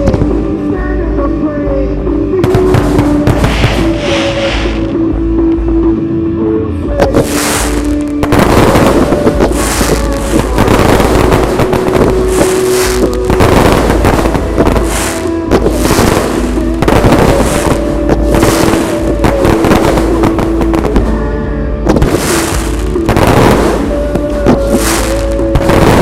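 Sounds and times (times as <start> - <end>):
fireworks booms and crackling: 0.0 - 0.5, 2.4 - 5.0, 7.0 - 21.2, 21.8 - 26.0
anthem over sound system: 0.0 - 26.0
fireworks hissing bursts: 2.4 - 5.0, 7.1 - 21.1, 21.9 - 26.0.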